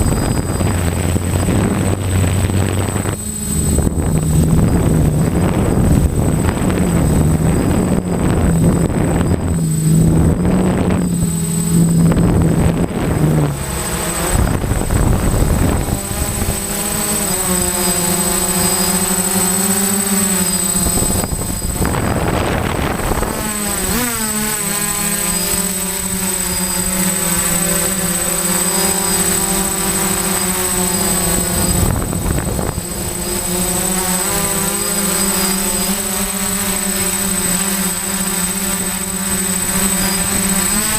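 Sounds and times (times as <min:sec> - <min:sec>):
thin high whistle: 0:00.0 - 0:01.6, 0:17.8 - 0:21.8
drone propellers whining: 0:00.0 - 0:40.9
gusty wind noise: 0:00.0 - 0:40.9.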